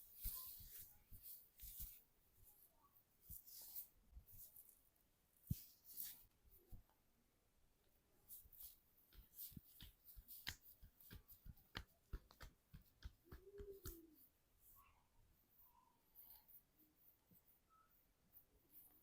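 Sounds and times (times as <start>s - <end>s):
soft taps of massaging hands: 0.0s - 2.0s, 5.4s - 7.0s, 8.3s - 14.3s.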